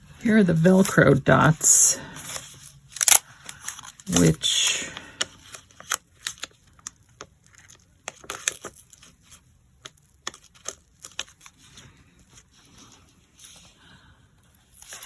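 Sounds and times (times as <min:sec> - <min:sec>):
velcro clicks and crackles: 0:02.2 - 0:04.3, 0:05.2 - 0:13.6.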